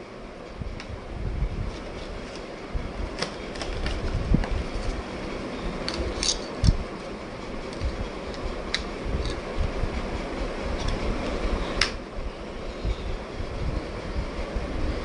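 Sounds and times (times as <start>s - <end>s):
low background rumble: 0.0s - 15.0s.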